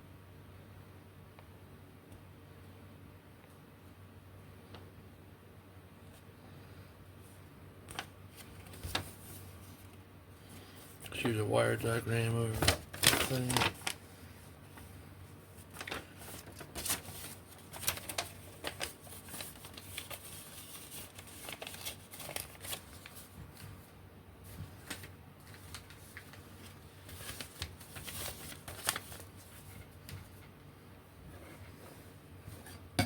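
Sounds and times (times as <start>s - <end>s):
paper and plastic parts rustling: 7.9s - 14.0s, 15.5s - 30.5s.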